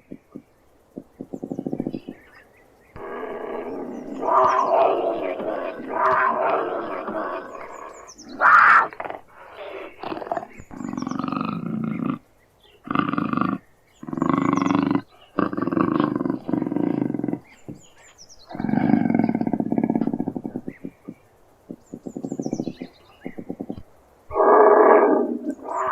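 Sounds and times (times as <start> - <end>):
cougar growling: 3.0 - 12.2, 12.8 - 17.9, 18.5 - 21.1, 23.5 - 25.9
cougar snarling: 3.0 - 12.2, 12.8 - 17.9, 18.5 - 20.8, 23.6 - 25.9.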